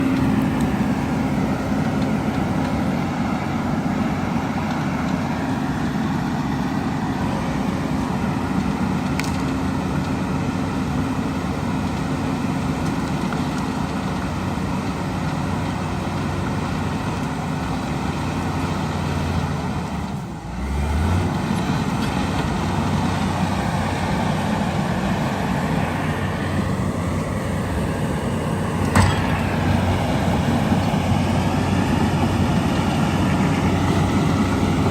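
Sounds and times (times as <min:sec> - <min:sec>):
diesel earthmoving machinery working: 0:00.0 - 0:34.9.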